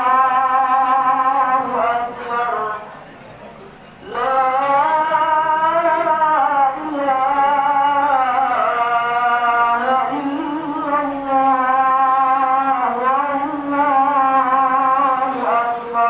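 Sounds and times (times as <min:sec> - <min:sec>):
person chanting melodic phrases: 0:04.0 - 0:16.0.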